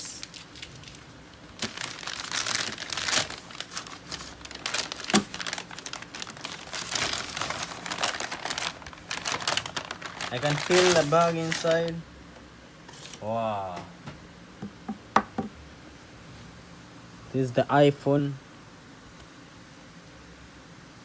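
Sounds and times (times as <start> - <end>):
packaging crinkling and tearing: 0.0 - 12.0.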